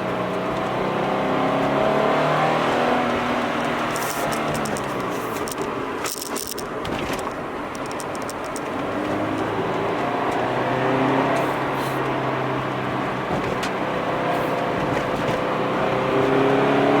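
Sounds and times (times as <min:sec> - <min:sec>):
car engine accelerating: 0:00.0 - 0:17.0
light rattling clicks: 0:03.6 - 0:09.5.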